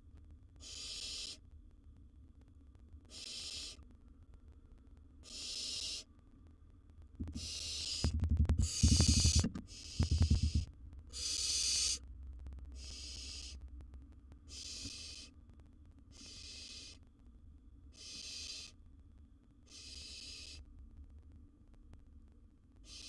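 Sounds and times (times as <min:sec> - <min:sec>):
owl nestlings hissing begging calls: 0:00.6 - 0:01.4, 0:03.1 - 0:03.8, 0:05.2 - 0:06.0, 0:07.3 - 0:10.6, 0:11.2 - 0:12.0, 0:12.8 - 0:13.6, 0:14.5 - 0:15.3, 0:16.1 - 0:17.0, 0:18.0 - 0:18.8, 0:19.7 - 0:20.6.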